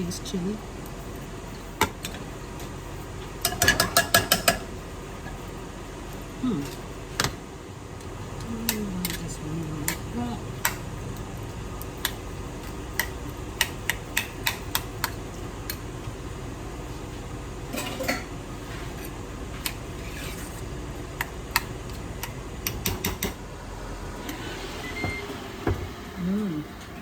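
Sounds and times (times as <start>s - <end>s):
steady low background hum: 0.0s - 27.0s
utensils clinking against dishes: 3.4s - 4.7s, 17.7s - 18.3s.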